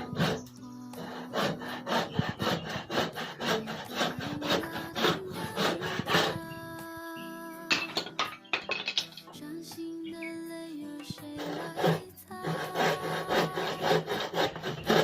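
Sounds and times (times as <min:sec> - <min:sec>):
hand saw cutting wood: 0:00.0 - 0:06.6, 0:11.2 - 0:15.0.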